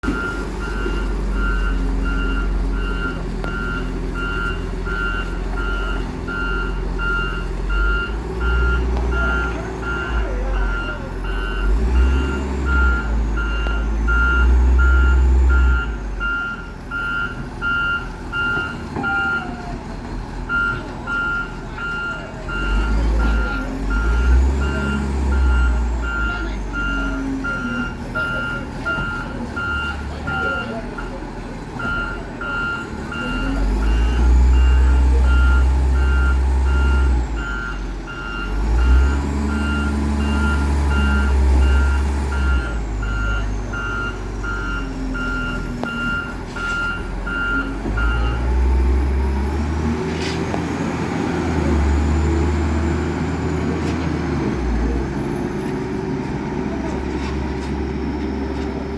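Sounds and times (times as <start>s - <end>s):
diesel engine running: 0.0s - 58.9s
reverse alarm beeping: 31.8s - 48.5s.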